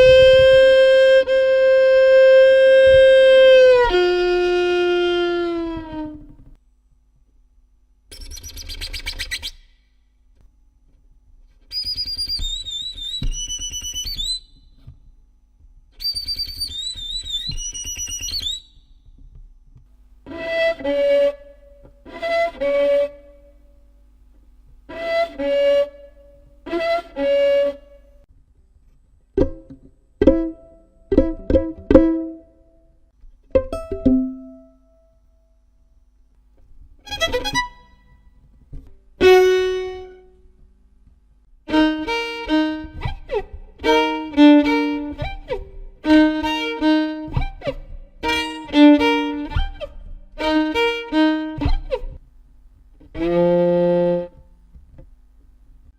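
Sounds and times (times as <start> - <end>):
violin imitating animal sounds: 0.0 - 6.5, 37.0 - 38.0, 41.7 - 52.2, 53.0 - 54.4.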